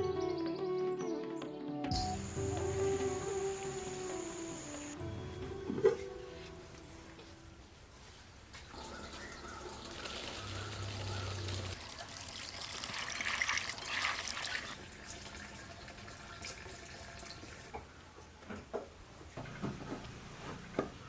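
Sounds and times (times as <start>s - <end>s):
water running and splashing: 8.7s - 17.7s.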